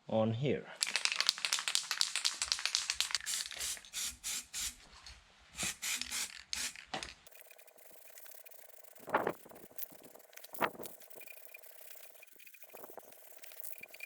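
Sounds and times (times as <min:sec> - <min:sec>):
aerosol spray hissing bursts: 0:03.1 - 0:04.8, 0:05.6 - 0:06.8.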